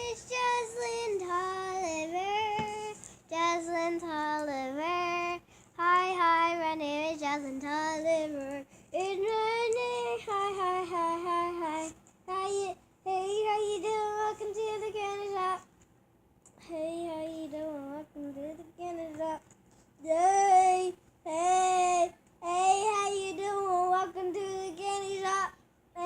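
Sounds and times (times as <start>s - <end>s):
child singing: 0.0s - 15.7s, 16.6s - 19.4s, 20.0s - 26.0s.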